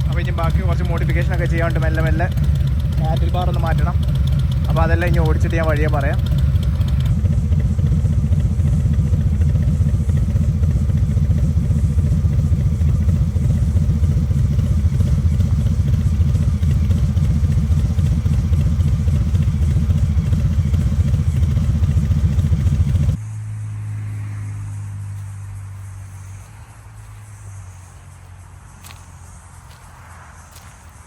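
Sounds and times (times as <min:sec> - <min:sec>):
motorcycle engine idling: 0:00.0 - 0:31.0.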